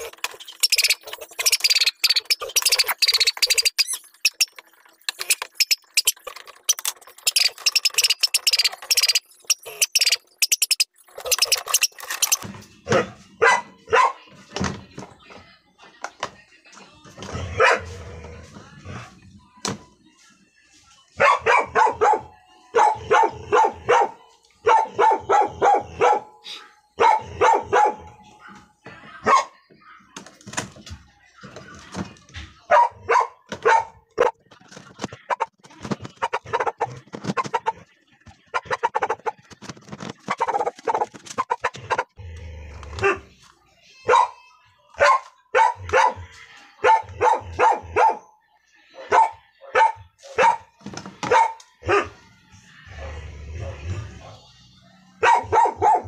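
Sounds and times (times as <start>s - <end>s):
dog barking: 12.9s - 14.2s, 17.5s - 18.0s, 21.2s - 26.4s, 27.0s - 29.6s, 32.7s - 34.4s, 44.0s - 44.4s, 45.0s - 48.3s, 49.0s - 52.2s, 55.2s - 56.0s.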